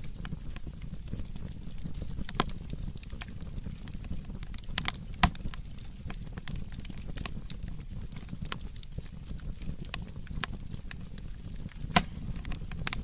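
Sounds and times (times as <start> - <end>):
firewood crackling: 0.0 - 13.0
low steady rumble: 0.0 - 13.0
sharp pops: 4.8 - 5.6, 11.6 - 13.0.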